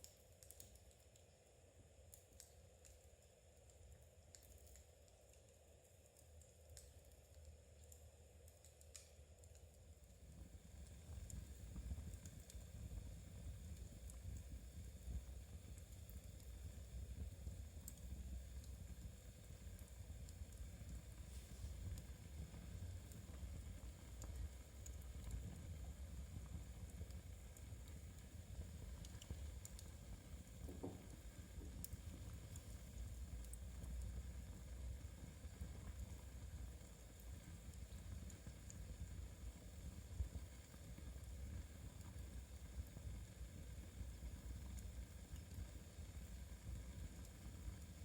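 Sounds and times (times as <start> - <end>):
wood fire crackling: 0.0 - 48.0
low steady rumble: 9.9 - 48.0.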